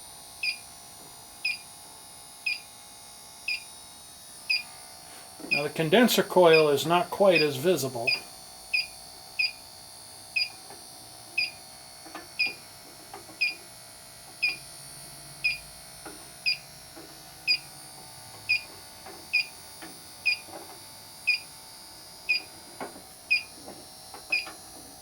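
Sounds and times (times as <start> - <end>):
leak detector beeping: 0.4 - 0.7, 1.4 - 1.7, 2.4 - 2.6, 3.5 - 3.7, 4.5 - 4.7, 5.4 - 9.6, 10.3 - 10.6, 11.4 - 11.6, 12.4 - 12.6, 13.4 - 13.6, 14.4 - 14.6, 15.4 - 15.7, 16.4 - 16.6, 17.5 - 17.7, 18.5 - 18.7, 19.3 - 19.6, 20.2 - 20.5, 21.3 - 21.5, 22.3 - 22.5, 23.3 - 23.6, 24.3 - 24.6.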